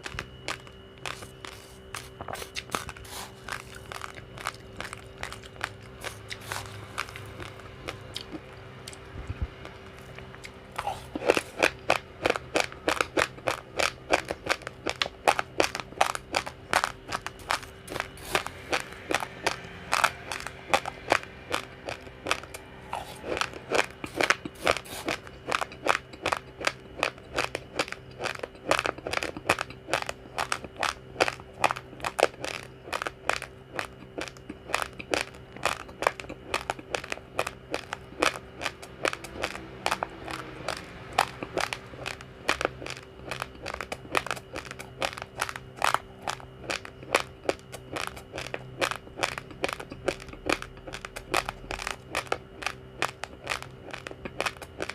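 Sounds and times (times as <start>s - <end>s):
chewing crunchy rice grains: 0.0s - 54.9s
faint steady hum: 0.0s - 54.9s.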